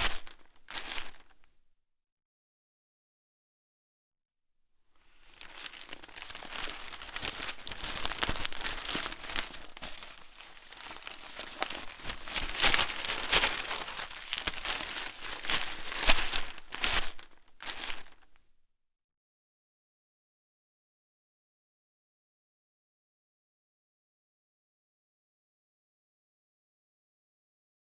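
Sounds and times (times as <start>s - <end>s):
newspaper pages rustling: 0.0s - 1.4s, 5.0s - 18.3s.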